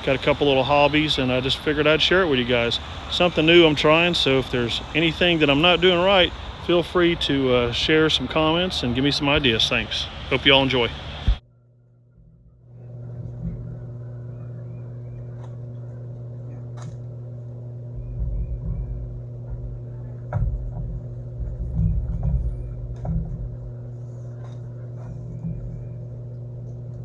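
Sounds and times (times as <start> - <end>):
low rumbles: 0.0 - 11.4, 17.9 - 27.0
steady low hum: 0.0 - 11.4, 12.3 - 27.0.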